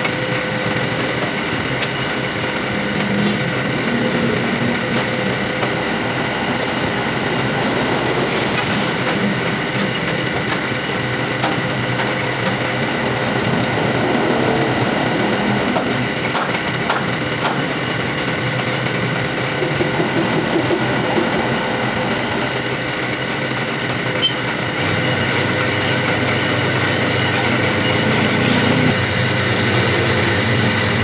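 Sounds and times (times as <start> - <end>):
metal lathe drone: 0.0 - 31.0.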